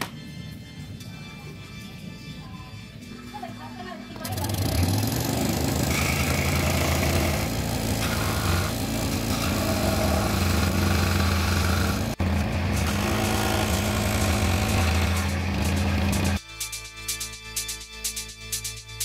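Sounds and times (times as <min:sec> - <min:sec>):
power tool motor running: 0:04.2 - 0:16.4.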